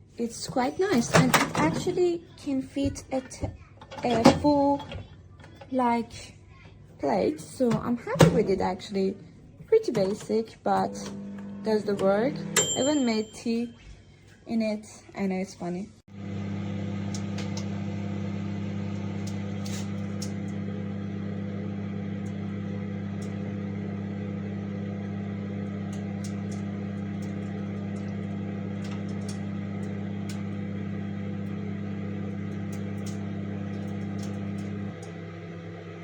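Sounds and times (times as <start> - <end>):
microwave oven humming: 10.8 - 13.4, 16.1 - 36.0.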